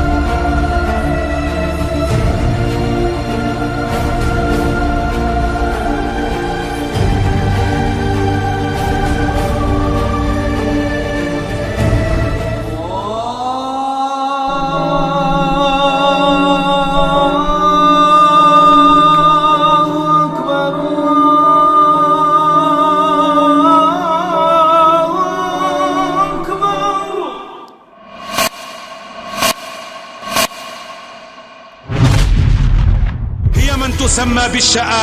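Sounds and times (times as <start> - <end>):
low drone: 27.7 - 33.2.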